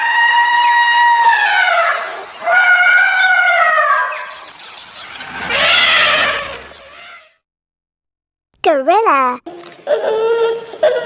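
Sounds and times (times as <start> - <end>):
elephant trumpeting: 0.0 - 4.4, 5.1 - 7.3.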